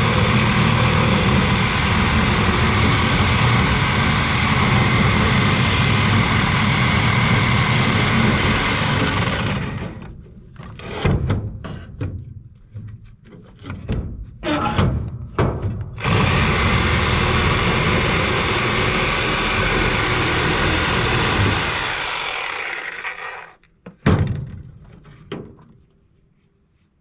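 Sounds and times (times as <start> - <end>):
power tool cutting steel: 0.0 - 10.0, 16.0 - 23.6.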